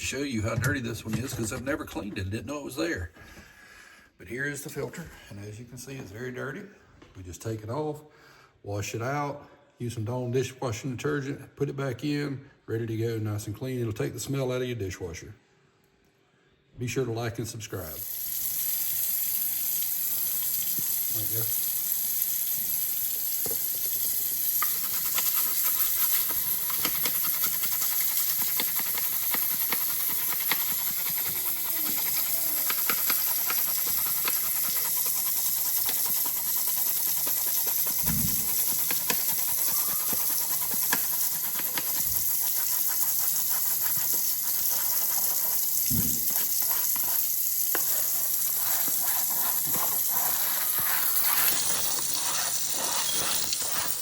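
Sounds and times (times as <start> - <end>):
kitchen tap running: 0.3 - 2.1, 17.8 - 54.0.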